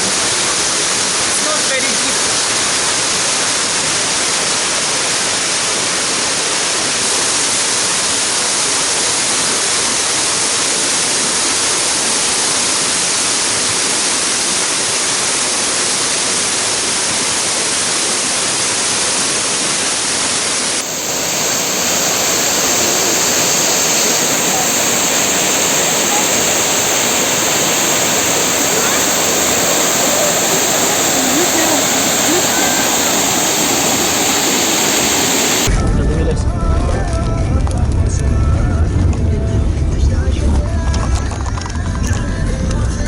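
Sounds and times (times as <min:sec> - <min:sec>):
waterfall rushing: 0:20.6 - 0:35.7.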